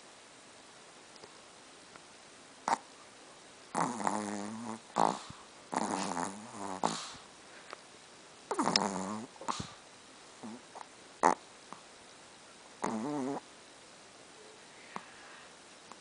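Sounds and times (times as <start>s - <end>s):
dog snoring: 2.6s - 2.9s, 3.7s - 7.3s, 8.5s - 9.8s, 10.4s - 11.4s, 12.8s - 13.5s
dog snorting: 3.7s - 7.3s, 8.5s - 9.8s, 10.4s - 11.4s, 12.8s - 13.4s.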